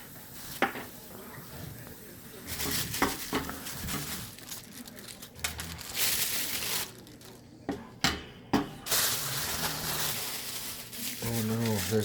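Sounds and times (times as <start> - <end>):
packaging crinkling and rustling: 2.5 - 7.5, 8.9 - 12.0.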